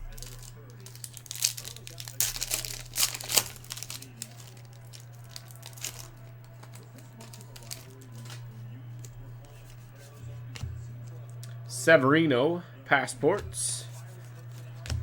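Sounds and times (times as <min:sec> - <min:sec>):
foil wrappers crinkling and tearing: 0:00.0 - 0:10.7, 0:13.8 - 0:14.9
cards being handled: 0:00.0 - 0:11.4, 0:13.4 - 0:15.0
steady low hum: 0:00.0 - 0:15.0.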